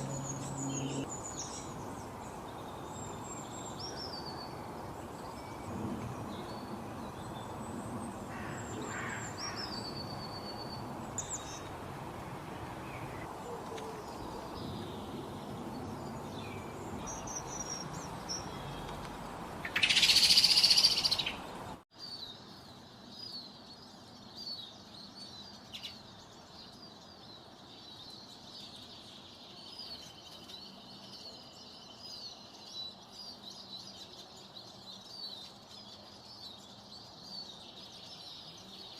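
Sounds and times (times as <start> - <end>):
birds chirping and calling: 0.0 - 1.8, 19.6 - 21.7
outdoor background hiss: 0.0 - 38.9
high bird trill: 19.6 - 21.5.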